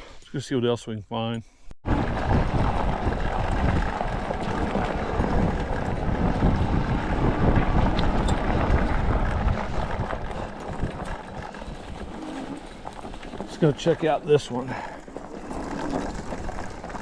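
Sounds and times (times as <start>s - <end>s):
wind buffeting microphone: 1.8s - 14.0s.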